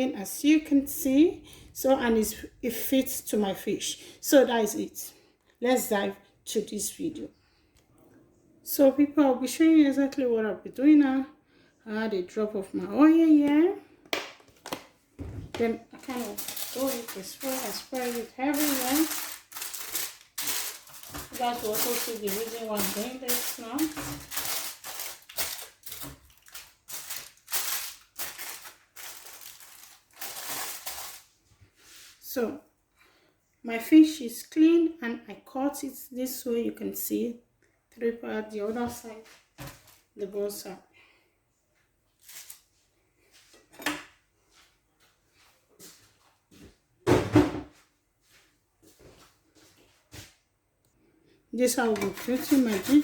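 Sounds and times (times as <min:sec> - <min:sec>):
items knocking on a counter: 0:47.1 - 0:47.8.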